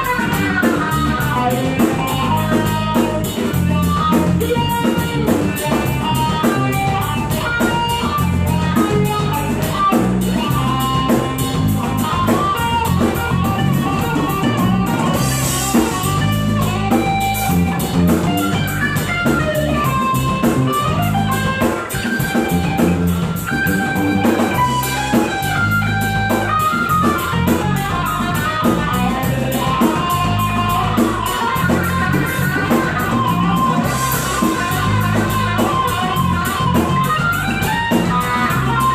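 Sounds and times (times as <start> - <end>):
bass: 0.0 - 38.9
drum-kit beat: 0.0 - 38.9
electric guitar lead: 0.0 - 38.9.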